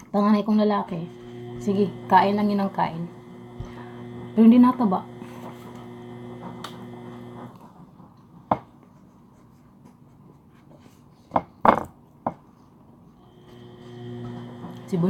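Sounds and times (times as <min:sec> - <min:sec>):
background hum: 0:00.8 - 0:08.1, 0:13.1 - 0:15.0.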